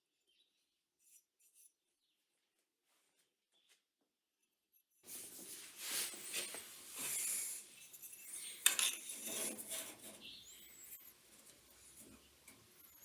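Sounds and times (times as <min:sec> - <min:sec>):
scraping and rubbing on metal: 0:05.0 - 0:13.0.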